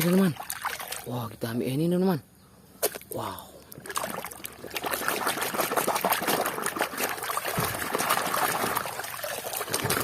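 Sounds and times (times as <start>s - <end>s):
water pouring and trickling: 3.7s - 10.0s.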